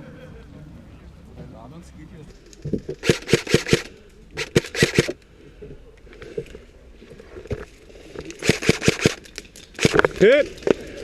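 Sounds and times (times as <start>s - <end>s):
airsoft guns firing: 3.0s - 5.2s, 8.4s - 9.2s, 9.8s - 10.2s.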